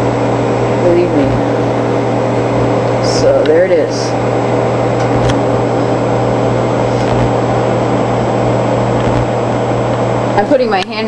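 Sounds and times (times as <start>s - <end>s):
microwave oven humming: 0.0s - 11.0s.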